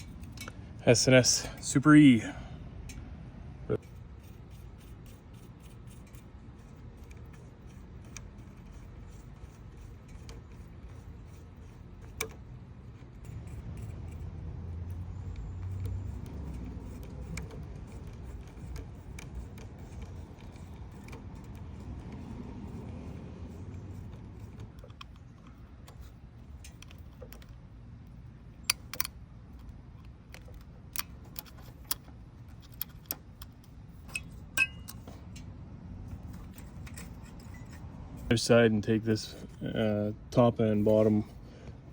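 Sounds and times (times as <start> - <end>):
sharp metallic clicks: 3.8 - 35.5
hand tools clinking on metal: 34.1 - 35.0.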